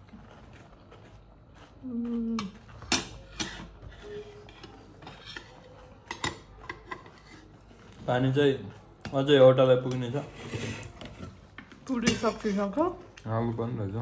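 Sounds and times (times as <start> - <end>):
dishes and utensils clinking: 2.4 - 7.6, 11.6 - 12.8.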